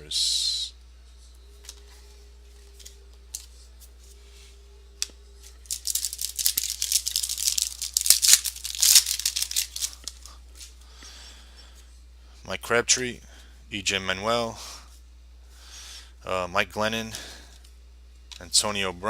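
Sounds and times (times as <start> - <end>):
rustling and scraping of cards: 1.6 - 4.6, 5.4 - 10.8
light clicks of card packaging: 5.0 - 10.8.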